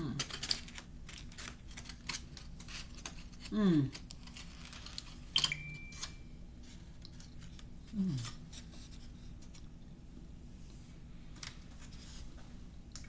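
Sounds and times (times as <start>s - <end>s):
person humming mmm: 3.5s - 4.0s, 7.9s - 8.4s.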